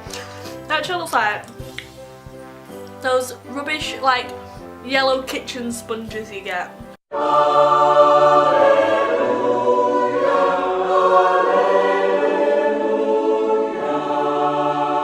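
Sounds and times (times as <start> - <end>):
choir singing held chords: 7.1 - 15.0.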